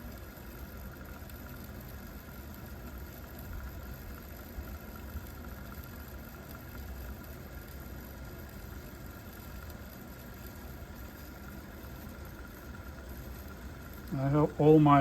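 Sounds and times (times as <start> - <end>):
cassette deck fast-forward whir: 0.0 - 15.0.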